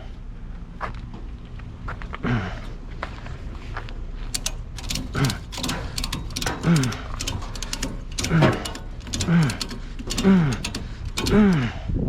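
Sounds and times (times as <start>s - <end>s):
scrap metal clicking and rattling: 4.2s - 11.8s.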